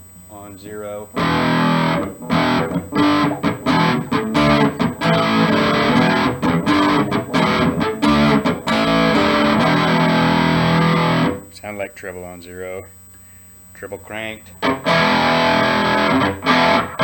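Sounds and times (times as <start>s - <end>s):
electric guitar chord riff: 1.1s - 11.5s, 14.5s - 17.0s.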